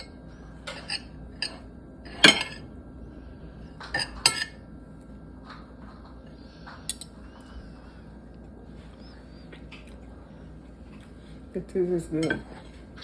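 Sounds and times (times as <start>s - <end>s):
cutlery clinking against plate: 0.0s - 2.6s, 3.8s - 4.6s, 12.2s - 12.7s.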